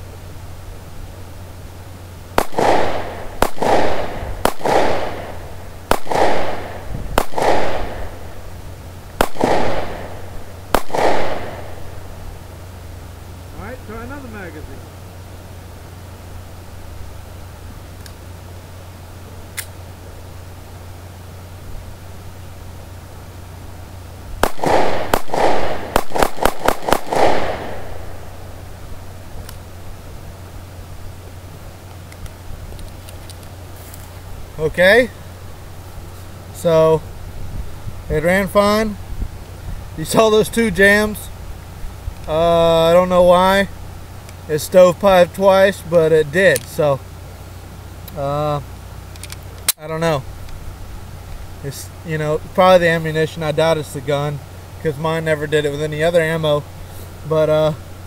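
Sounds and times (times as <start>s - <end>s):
pistol shots with echo: 2.4s - 8.5s, 9.2s - 12.2s, 24.4s - 28.6s.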